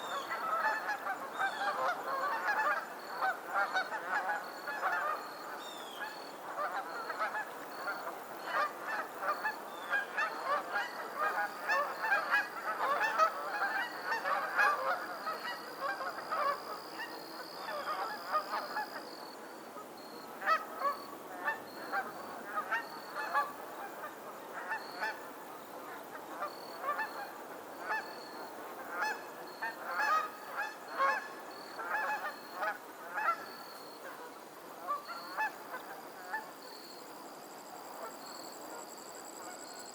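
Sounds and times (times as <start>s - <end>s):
geese honking: 28.9s - 31.2s.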